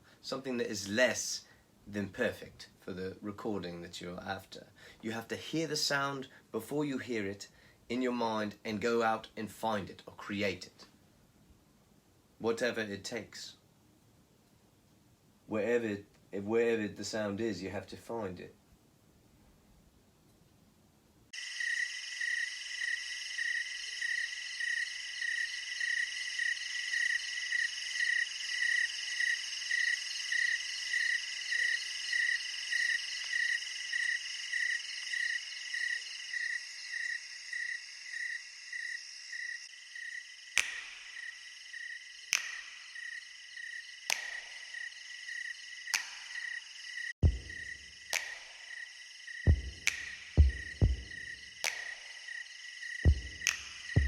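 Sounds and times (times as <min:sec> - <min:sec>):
sharp clicks: 0:40.6 - 0:41.0, 0:42.3 - 0:42.8, 0:44.1 - 0:44.5, 0:45.9 - 0:46.4, 0:49.8 - 0:52.0, 0:53.4 - 0:54.0
deep thumps: 0:47.2 - 0:47.8, 0:49.5 - 0:51.3, 0:53.1 - 0:54.0.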